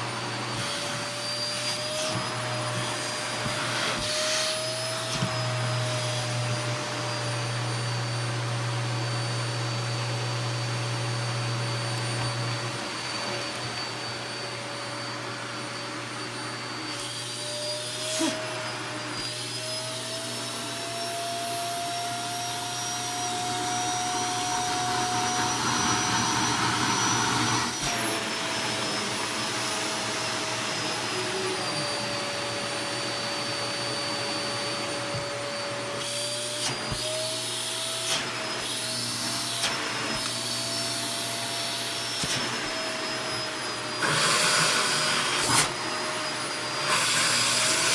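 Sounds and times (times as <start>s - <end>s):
vacuum cleaner running: 0.0s - 47.9s.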